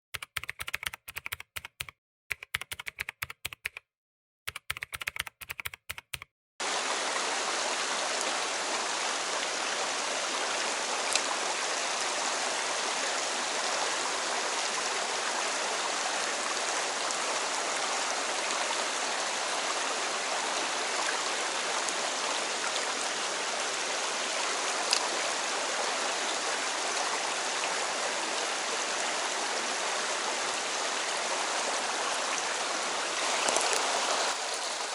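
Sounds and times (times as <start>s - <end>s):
rapid typing-like clicks: 0.2s - 3.9s, 4.5s - 6.3s
mountain stream flowing: 6.6s - 34.9s.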